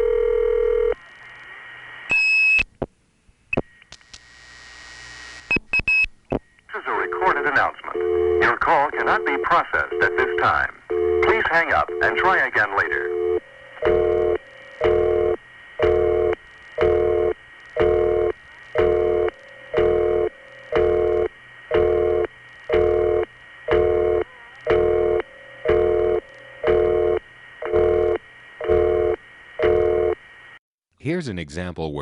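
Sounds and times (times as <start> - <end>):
telephone busy signal: 0.0 - 1.0, 6.8 - 30.2.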